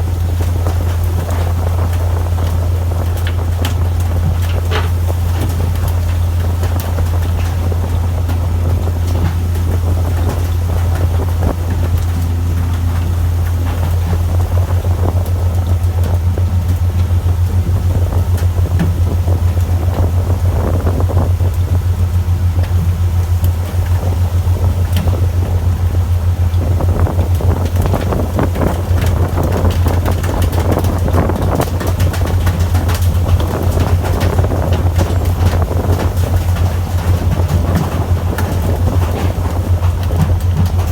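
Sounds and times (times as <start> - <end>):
boat engine drone: 0.0 - 40.9
knocks and rattles: 26.5 - 40.9.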